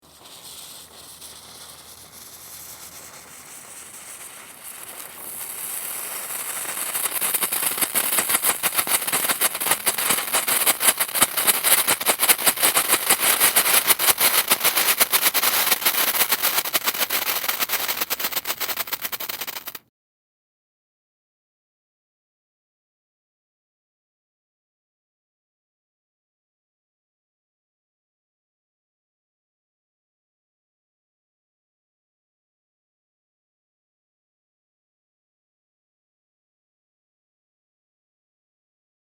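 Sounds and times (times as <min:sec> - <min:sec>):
firework crackling pops: 0:00.0 - 0:19.8
firework soft hiss: 0:00.0 - 0:19.8.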